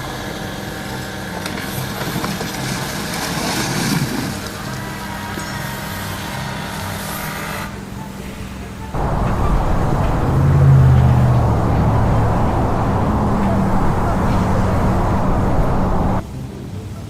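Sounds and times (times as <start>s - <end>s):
motor rumbling: 7.8s - 16.2s.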